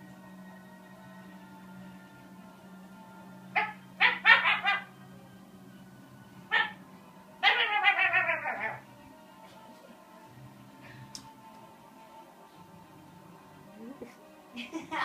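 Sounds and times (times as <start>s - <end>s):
dog barking: 3.6s - 4.9s
dog howling: 3.6s - 4.9s, 7.4s - 8.9s.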